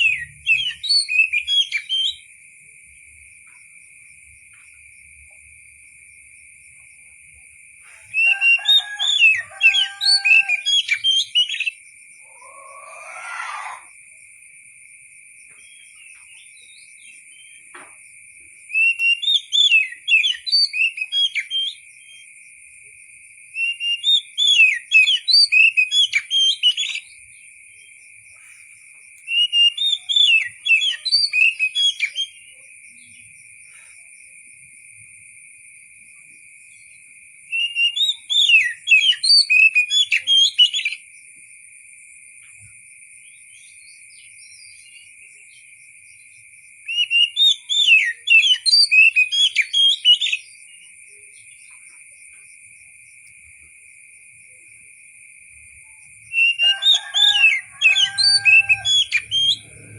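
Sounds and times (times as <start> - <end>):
bird singing whistled phrases: 0.0 - 2.2, 8.1 - 11.8, 18.8 - 21.8, 23.6 - 27.1, 29.3 - 32.4, 37.6 - 41.0, 46.9 - 50.4, 56.4 - 59.9.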